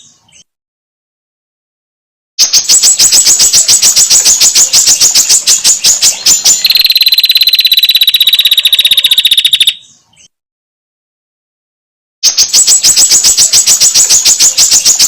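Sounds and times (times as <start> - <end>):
fast thin bird trill: 2.4 - 9.9, 12.2 - 15.0
bird chattering calls: 2.5 - 9.8.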